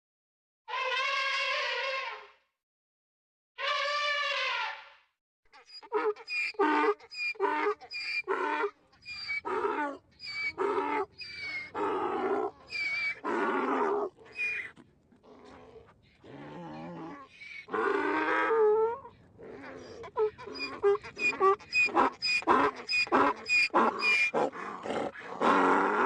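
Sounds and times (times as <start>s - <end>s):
cartoon animal cries and growls: 5.6s - 26.0s.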